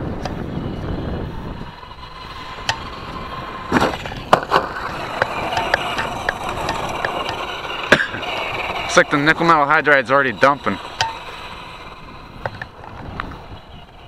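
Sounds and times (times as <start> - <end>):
electric motor whining: 0.0 - 14.0
toy truck chassis knocks and clatter: 3.7 - 14.0.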